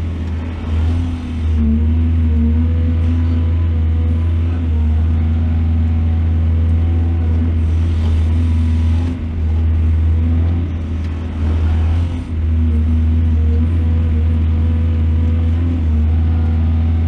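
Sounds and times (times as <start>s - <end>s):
heavy diesel engine droning: 0.0s - 17.0s.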